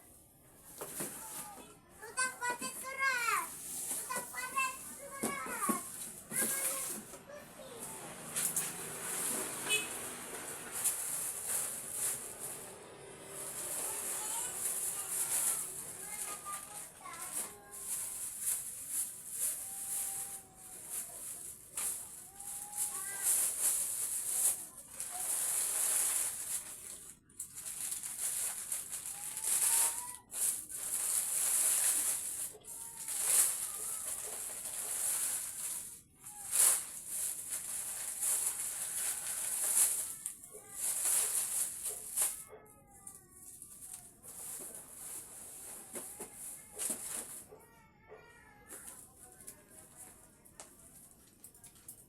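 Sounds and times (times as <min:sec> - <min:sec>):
plastic packaging crinkling: 0:00.8 - 0:47.4.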